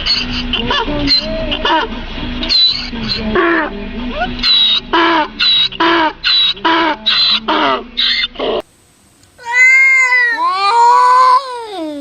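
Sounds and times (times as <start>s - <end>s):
cat meowing: 9.4s - 12.0s.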